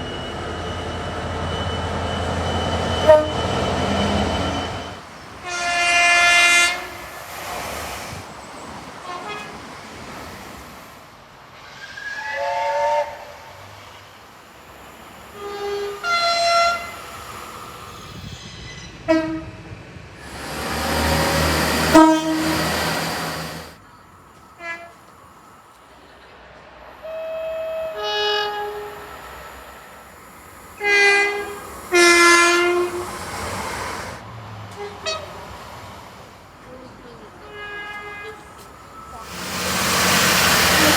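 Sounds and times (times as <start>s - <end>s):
train rumbling past: 0.0s - 40.9s
train air horn blasts: 3.0s - 4.7s, 5.4s - 7.1s, 9.0s - 9.6s, 11.7s - 13.6s, 15.3s - 17.0s, 19.0s - 19.6s, 20.2s - 23.8s, 24.6s - 25.0s, 27.0s - 29.1s, 30.8s - 33.2s, 34.8s - 35.3s, 37.4s - 38.5s, 39.2s - 40.9s.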